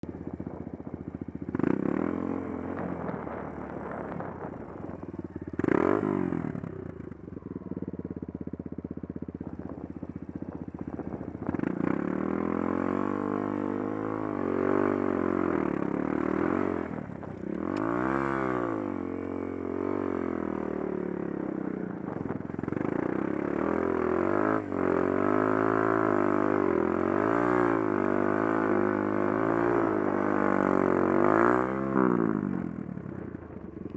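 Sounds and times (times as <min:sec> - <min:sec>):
off-road vehicle engine revving: 0:05.6 - 0:06.8, 0:11.4 - 0:21.4, 0:22.6 - 0:32.8.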